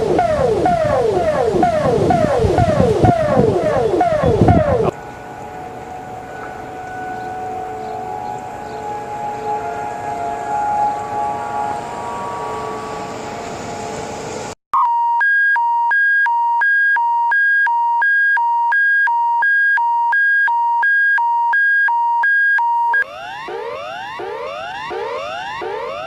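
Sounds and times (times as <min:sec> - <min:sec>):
electronic hi-lo alert tone: 0:00.0 - 0:06.5
noisy siren-like alarm: 0:00.0 - 0:26.0.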